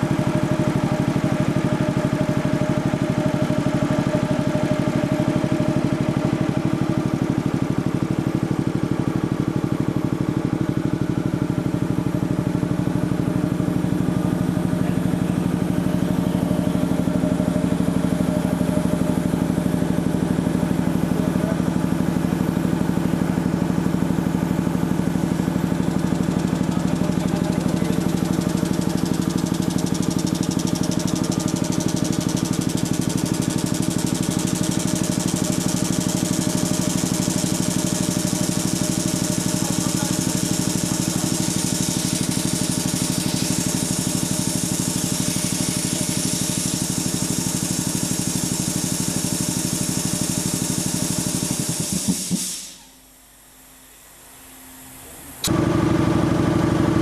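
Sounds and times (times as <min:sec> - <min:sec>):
piston air compressor running: 0:00.0 - 0:57.0
hiss of air: 0:50.7 - 0:52.9.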